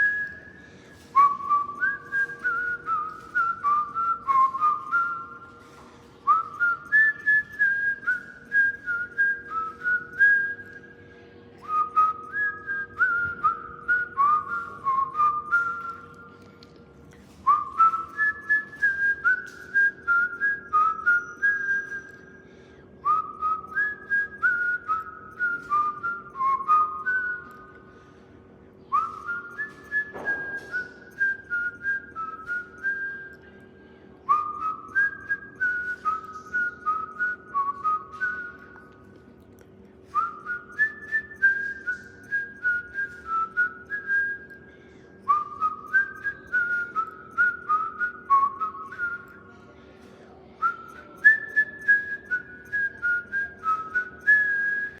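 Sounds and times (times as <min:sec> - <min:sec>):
person whistling a tune: 0:00.0 - 0:28.2, 0:28.8 - 0:39.2, 0:40.0 - 0:49.6, 0:50.6 - 0:55.0.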